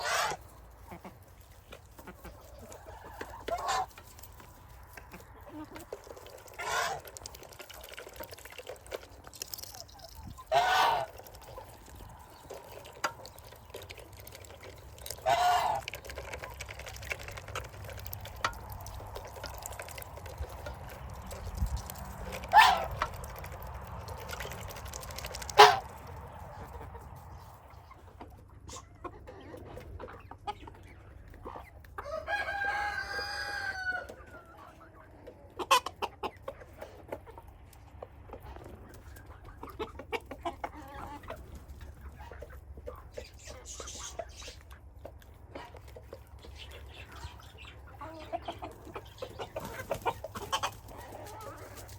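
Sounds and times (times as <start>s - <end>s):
chicken squawks: 0.0s - 1.2s, 6.5s - 7.1s, 10.2s - 11.6s, 15.2s - 15.8s, 22.2s - 23.1s, 25.5s - 27.0s, 38.4s - 44.7s
chickens clucking: 0.0s - 51.9s
rooster crowing: 32.0s - 34.2s.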